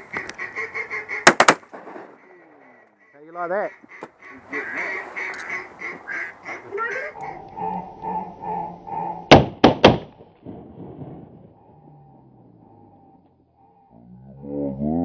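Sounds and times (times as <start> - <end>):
ducks quacking: 0.0 - 1.4, 2.1 - 9.4
shotgun shots: 1.2 - 2.2, 9.3 - 11.3.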